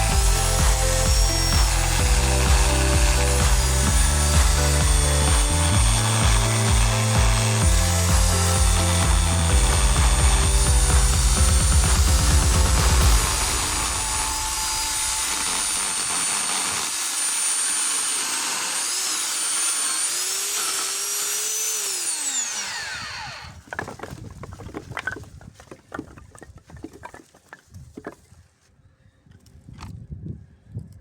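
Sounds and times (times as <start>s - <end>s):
electric chainsaw motor whine: 0.0s - 23.6s.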